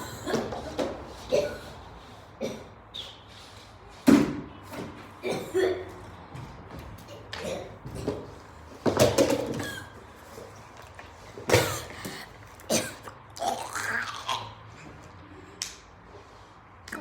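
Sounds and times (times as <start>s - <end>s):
person coughing hard: 0.0s - 1.8s, 2.4s - 2.8s, 5.2s - 6.0s, 7.4s - 8.2s, 9.5s - 10.0s, 11.5s - 14.6s.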